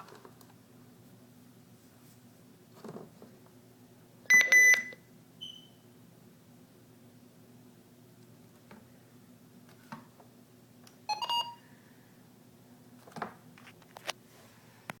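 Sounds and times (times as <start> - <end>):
low electrical hum: 0.0 - 15.0
short electronic beeps: 4.3 - 5.8, 11.1 - 11.6.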